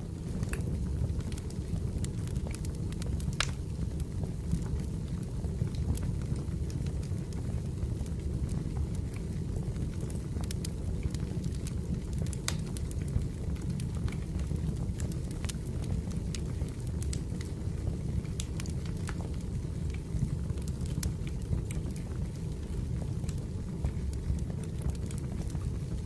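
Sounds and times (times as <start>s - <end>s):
fire rumbling: 0.0s - 26.0s
wood crackling and popping: 0.0s - 26.0s.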